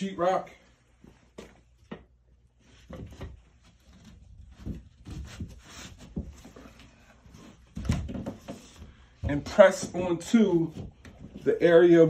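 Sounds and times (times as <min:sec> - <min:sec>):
drywall sheet knocking and scraping: 0:02.6 - 0:12.0.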